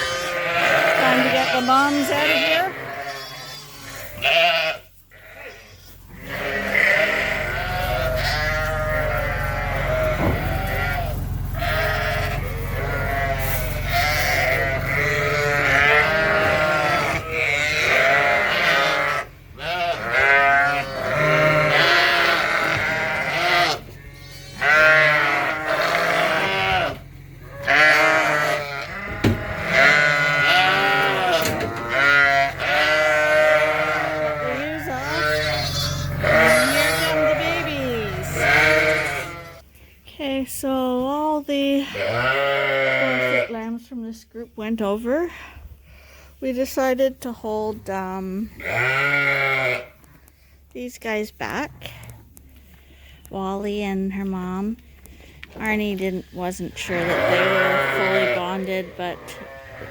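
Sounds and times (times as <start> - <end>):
sheep bleating: 0.0 - 39.6, 41.8 - 43.6, 48.6 - 50.0, 56.8 - 59.9
low steady hum: 4.8 - 59.9.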